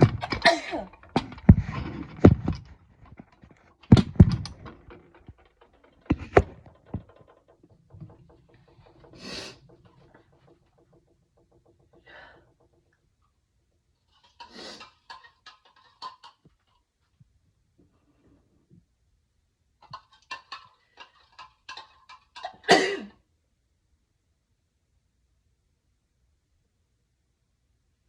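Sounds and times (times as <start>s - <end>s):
breathy breathing sounds: 8.9s - 9.8s, 12.0s - 12.6s
person sneezing: 22.7s - 23.1s.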